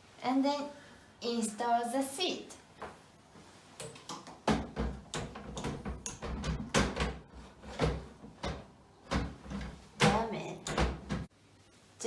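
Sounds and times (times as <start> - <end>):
plastic clunks and knocks: 4.1 - 11.3.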